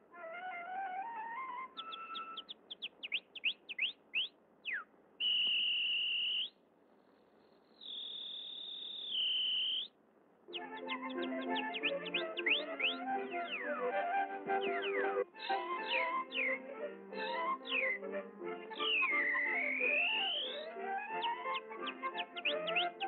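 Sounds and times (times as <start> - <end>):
music: 0.0 - 2.5, 10.5 - 23.0
cartoon canary chirping: 1.7 - 5.6, 7.8 - 9.9, 10.5 - 13.8, 14.5 - 23.0
long high whistle notes: 5.2 - 6.5, 8.2 - 9.8, 10.6 - 21.6.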